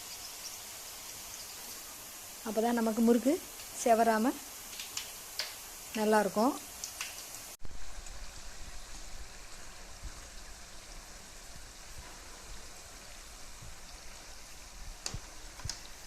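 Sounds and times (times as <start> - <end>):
food sizzling in hot oil: 0.0 - 16.0
oil crackling: 4.6 - 10.9.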